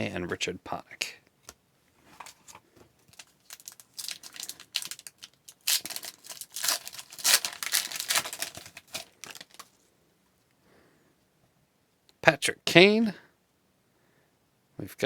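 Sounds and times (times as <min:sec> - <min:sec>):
foil wrapper crinkling and tearing: 0:02.2 - 0:09.8.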